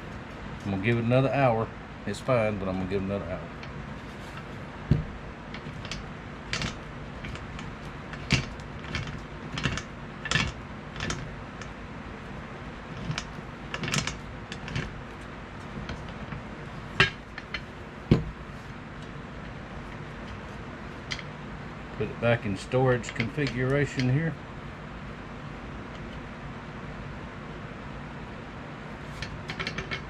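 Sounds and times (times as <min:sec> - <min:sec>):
metal tool clicking and clanking: 0:04.4 - 0:11.7, 0:12.9 - 0:15.0, 0:15.8 - 0:18.3, 0:23.0 - 0:24.2, 0:29.2 - 0:30.0
loud knocks: 0:04.8 - 0:11.3, 0:15.8 - 0:18.5.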